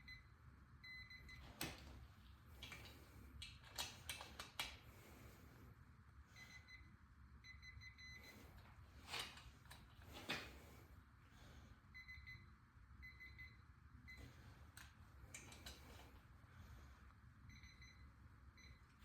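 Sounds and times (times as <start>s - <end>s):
faint electronic beeping: 0.0s - 1.4s, 6.4s - 8.4s, 11.9s - 14.3s, 17.5s - 19.0s.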